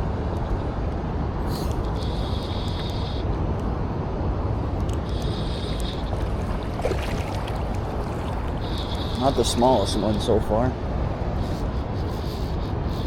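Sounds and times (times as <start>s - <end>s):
river water rushing: 5.6s - 9.3s.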